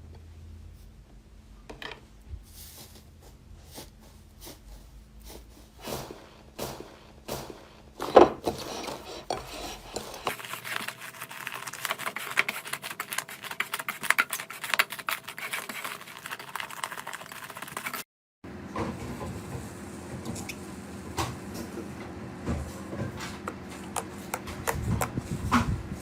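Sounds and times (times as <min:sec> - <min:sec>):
slime squishing: 0:09.5 - 0:18.0.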